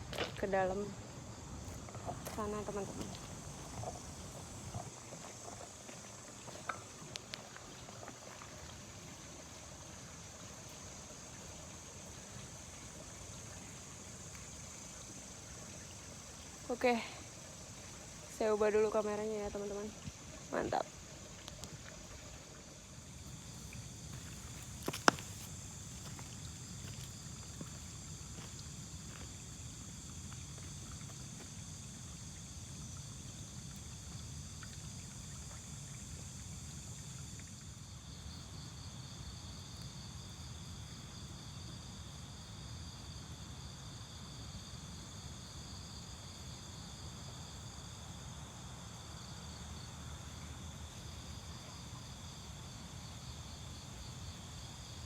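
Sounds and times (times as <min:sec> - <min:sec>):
night insects chirring: 0:00.0 - 0:55.0.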